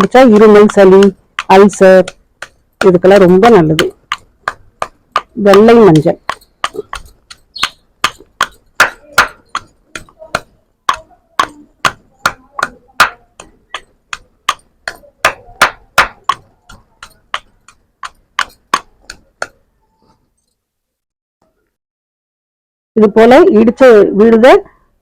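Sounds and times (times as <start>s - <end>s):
pestle pounding in a mortar: 0.0s - 19.6s.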